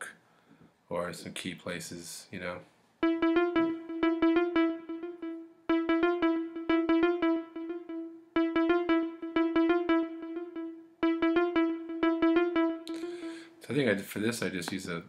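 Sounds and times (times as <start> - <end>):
synthesizer staccato notes with delay: 3.0 - 13.6.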